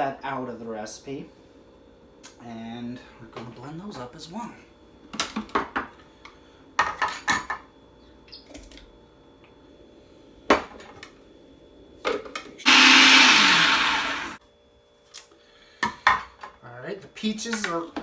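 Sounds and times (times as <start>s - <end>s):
electric blender running: 12.7s - 14.4s.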